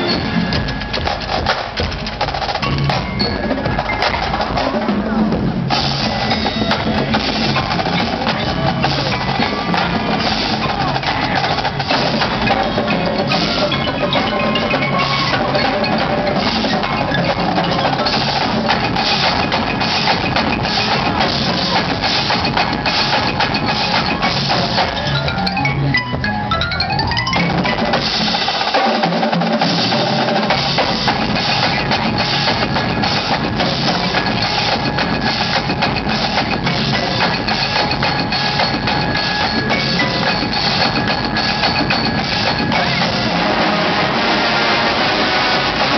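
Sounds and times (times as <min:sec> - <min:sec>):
drums keeping a steady beat: 0:00.0 - 0:45.9
mallet percussion: 0:00.0 - 0:45.9
marching band playing rock: 0:00.0 - 0:45.9
rising run of notes: 0:29.3 - 0:45.9.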